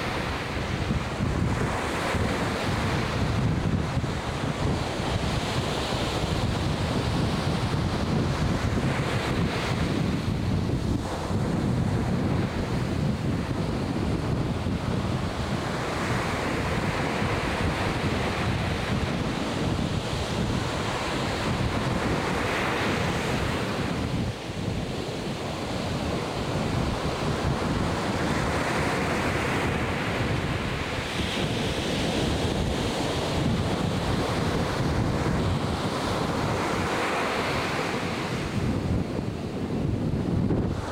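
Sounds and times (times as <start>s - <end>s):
ocean surf breaking: 0.0s - 40.9s
wind buffeting microphone: 0.0s - 40.9s.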